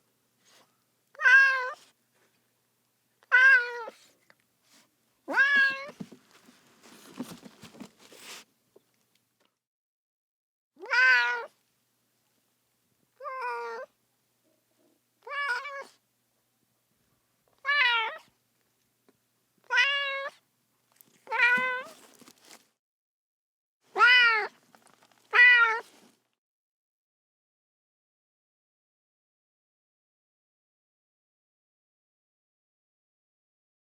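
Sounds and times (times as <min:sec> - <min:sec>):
cat meowing: 0:05.3 - 0:06.0, 0:10.8 - 0:11.5, 0:24.0 - 0:24.5, 0:25.3 - 0:25.9.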